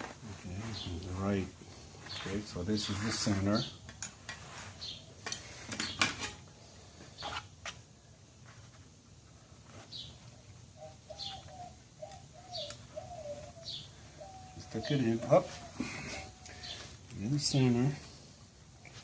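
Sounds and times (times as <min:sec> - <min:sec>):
hand tools clicking and tapping: 0:03.8 - 0:04.4, 0:05.2 - 0:06.4.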